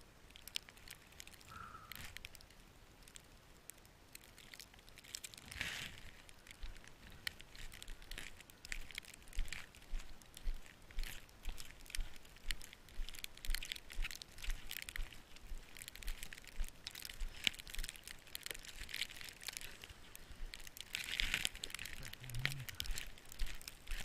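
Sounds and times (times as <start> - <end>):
footsteps crunching in snow: 5.0 - 24.0.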